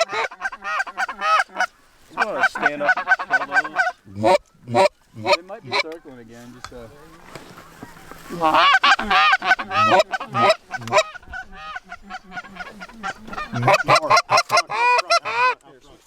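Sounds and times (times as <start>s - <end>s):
geese honking and clucking: 0.0s - 16.0s.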